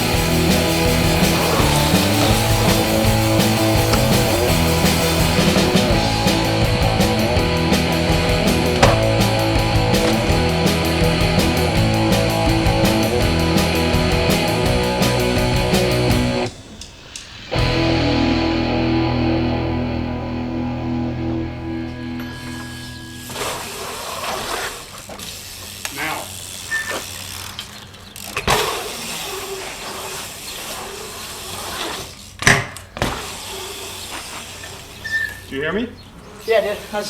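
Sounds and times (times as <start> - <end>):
distorted electric guitar rock music: 0.0 - 16.5, 17.4 - 23.6.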